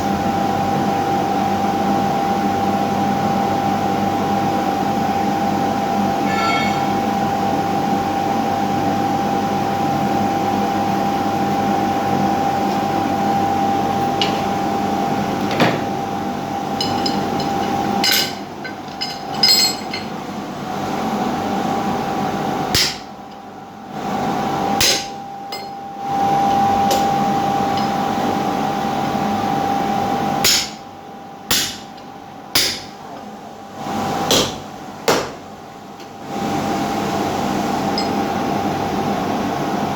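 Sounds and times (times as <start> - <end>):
machine hum with held tone: 0.0 - 39.9
hammer striking metal: 6.2 - 7.1, 22.8 - 23.1, 24.8 - 25.8, 30.4 - 30.8, 31.5 - 31.9, 32.6 - 33.0, 34.3 - 35.4.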